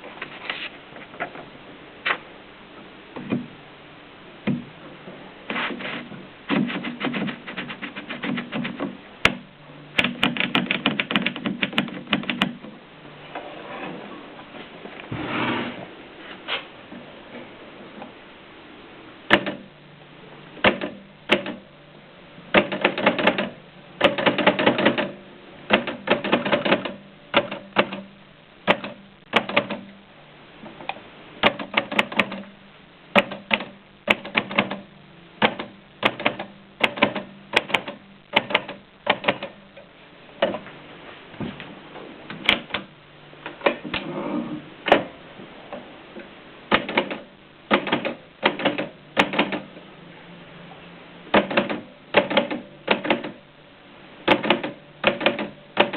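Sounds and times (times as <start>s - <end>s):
typewriter clacking: 10.0s - 12.5s, 22.6s - 28.0s, 46.7s - 49.7s, 51.3s - 53.4s, 54.3s - 55.9s.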